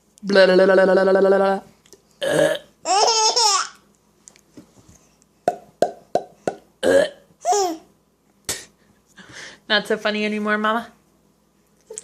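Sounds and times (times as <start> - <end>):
mouth popping clicks: 5.5 - 6.7.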